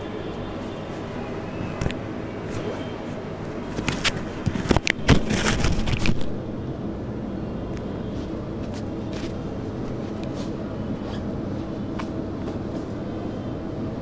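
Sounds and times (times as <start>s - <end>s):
low rumbling background noise: 0.0s - 14.0s
knocks and rustles: 3.7s - 6.3s.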